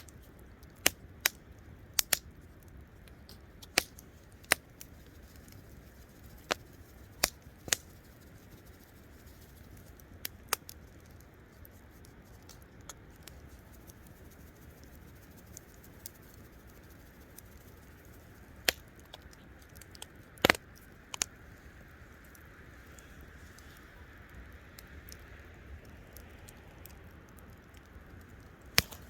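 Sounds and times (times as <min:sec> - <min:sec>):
campfire hissing: 0:00.0 - 0:29.0
fire popping: 0:00.0 - 0:29.0.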